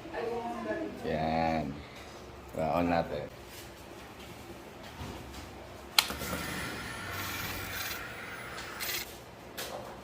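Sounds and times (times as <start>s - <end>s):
fuel pump whirring hum: 6.0s - 9.1s.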